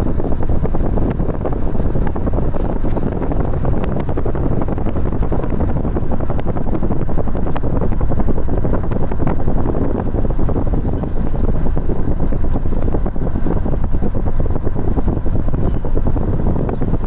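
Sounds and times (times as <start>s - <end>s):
wind buffeting microphone: 0.0s - 17.0s.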